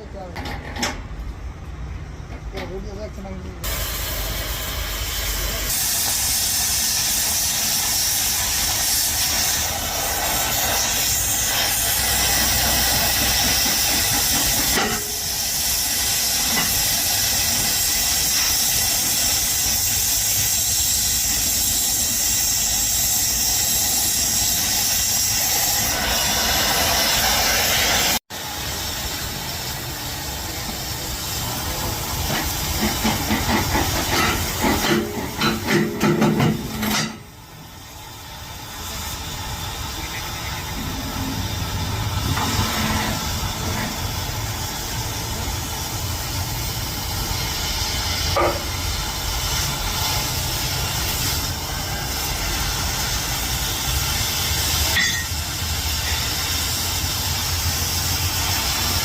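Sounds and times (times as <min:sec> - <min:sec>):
loud machine hiss: 0:03.6 - 0:59.0.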